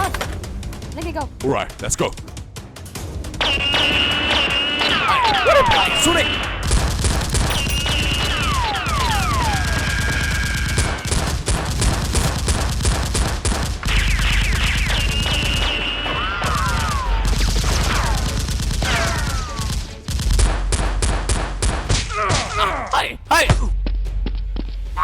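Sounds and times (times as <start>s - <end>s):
rapid gunfire: 3.1s - 22.1s
falling whistles: 14.0s - 17.0s.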